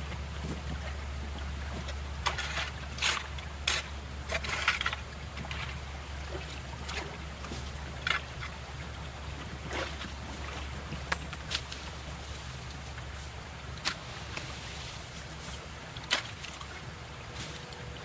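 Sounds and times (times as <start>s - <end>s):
steady low rumble: 0.0s - 18.0s.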